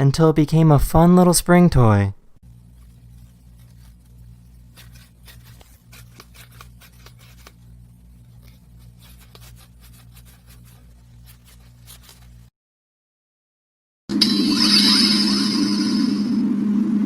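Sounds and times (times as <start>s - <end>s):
low electrical hum: 0.0s - 12.5s
paper crinkles and clicks: 2.6s - 12.5s.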